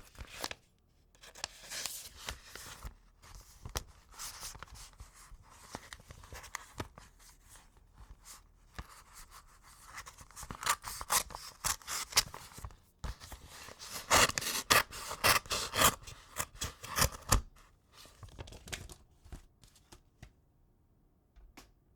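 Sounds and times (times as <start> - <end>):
knife slitting paper envelope: 9.8 - 17.5.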